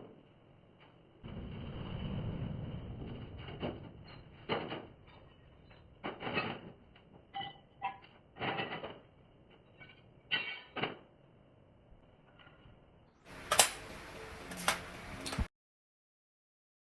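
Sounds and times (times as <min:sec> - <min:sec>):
knocks and clatters: 0:00.8 - 0:11.1.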